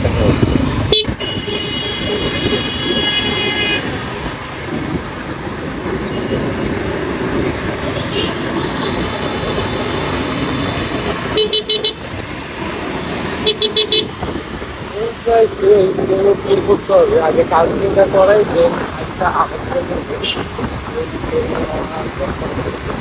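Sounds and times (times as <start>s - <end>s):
traffic rumble: 0.0s - 23.0s
short car honks: 0.9s - 4.0s
car horn blasts: 0.9s - 4.3s, 11.3s - 12.0s, 13.4s - 14.2s, 20.2s - 20.6s.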